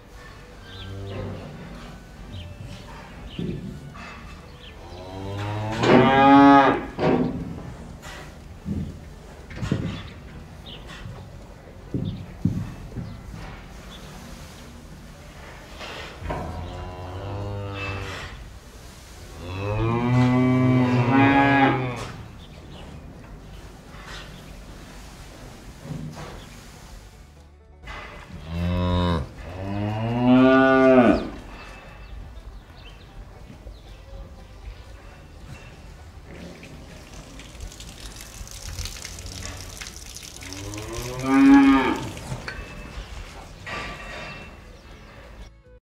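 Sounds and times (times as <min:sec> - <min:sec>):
cattle mooing: 0:04.8 - 0:07.0, 0:16.4 - 0:18.4, 0:19.4 - 0:22.2, 0:28.4 - 0:31.4, 0:39.1 - 0:42.5.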